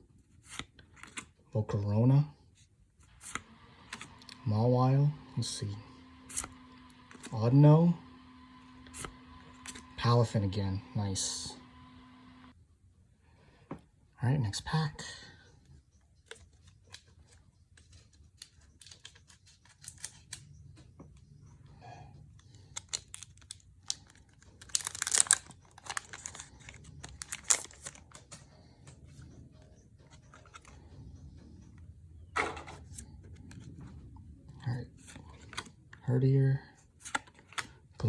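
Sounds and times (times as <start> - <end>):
rustles and clicks of handling: 22.2 - 31.8
foil wrapper crinkling and tearing: 22.6 - 28.3.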